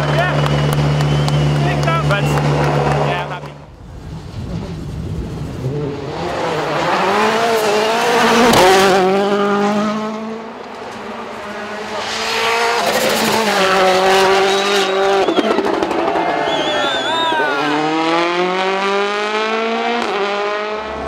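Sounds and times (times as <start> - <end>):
rally car engine revving: 0.0 - 21.0.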